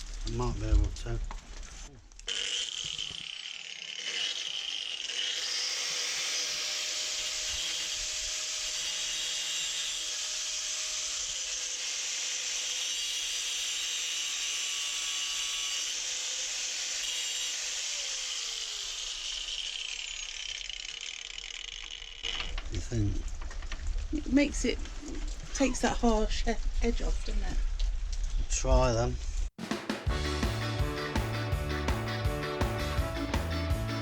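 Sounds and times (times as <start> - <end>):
angle grinder grinding metal: 2.2 - 22.6.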